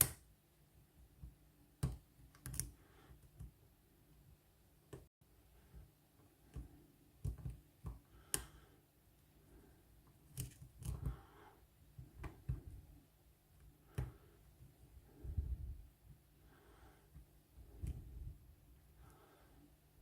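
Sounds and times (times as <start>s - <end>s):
lock pick clicking and scraping: 1.8s - 2.8s, 10.2s - 11.1s.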